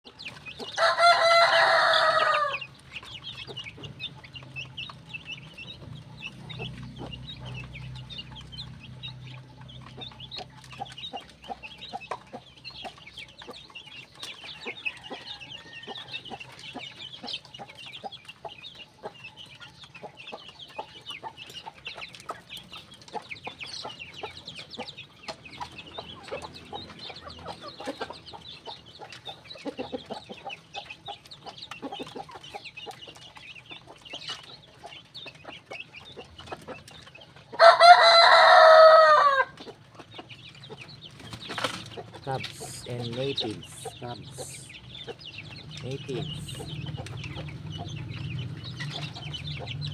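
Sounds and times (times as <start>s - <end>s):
chickens clucking: 0.0s - 49.9s
high chirping of birds: 0.0s - 49.9s
rooster crowing: 0.8s - 2.7s, 37.6s - 39.6s.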